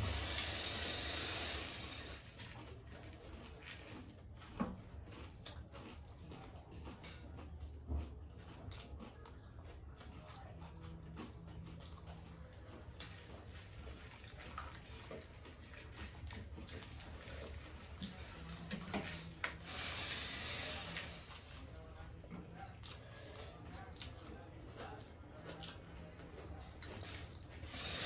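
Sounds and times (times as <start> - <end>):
person chewing crunchy snack: 0.0 - 28.0.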